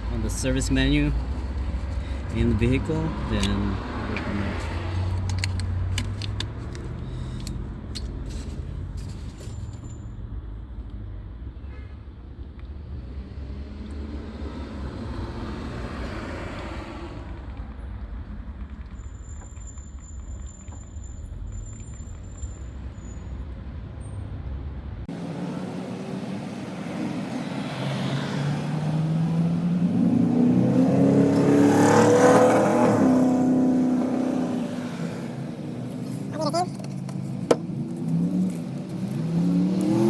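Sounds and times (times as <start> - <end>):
passing vehicle engine: 0.0 - 8.9, 12.8 - 18.2, 23.7 - 40.0
low rumble of traffic: 0.0 - 40.0.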